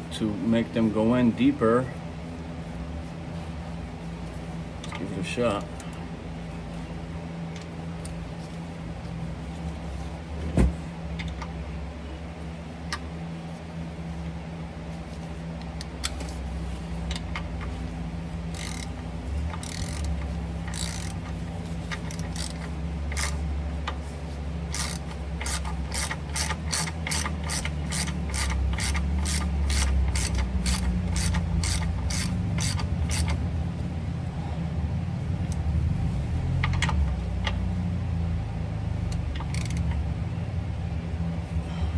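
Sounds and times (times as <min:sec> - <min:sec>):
hand ratchet clicking: 0:18.5 - 0:23.4, 0:24.7 - 0:33.4, 0:39.1 - 0:40.0.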